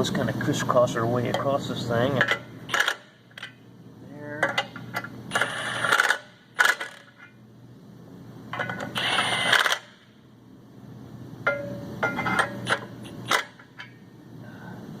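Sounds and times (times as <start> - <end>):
power tool tightening bolts: 2.7 - 3.0, 5.3 - 7.2, 8.6 - 10.0.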